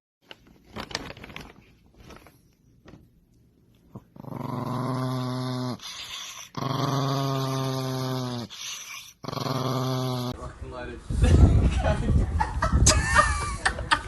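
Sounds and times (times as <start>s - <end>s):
dog growling: 3.9s - 10.4s.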